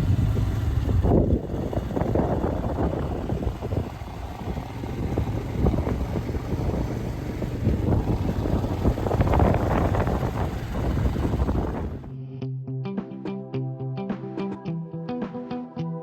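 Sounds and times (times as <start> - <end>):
motorcycle engine running: 0.0 - 12.1
wind buffeting microphone: 0.0 - 12.1.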